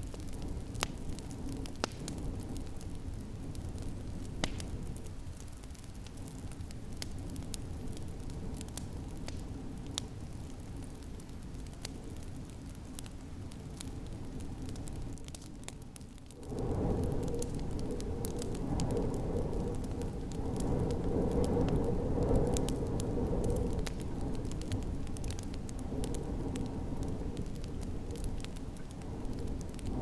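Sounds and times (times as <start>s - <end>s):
snowstorm wind rumble: 0.0s - 30.0s
wood fire crackling: 0.0s - 30.0s.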